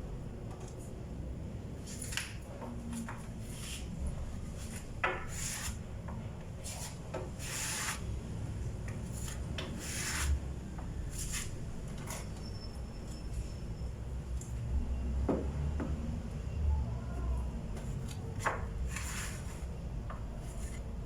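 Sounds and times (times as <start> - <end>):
putty knife scraping wood: 4.6 - 5.8, 6.6 - 8.0, 9.1 - 10.4, 18.4 - 19.7.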